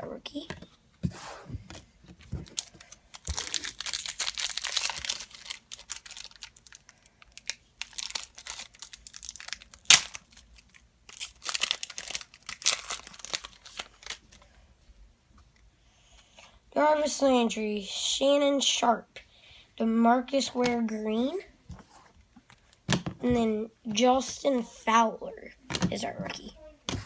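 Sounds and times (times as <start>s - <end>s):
foil wrapper crinkling and tearing: 2.4s - 14.4s.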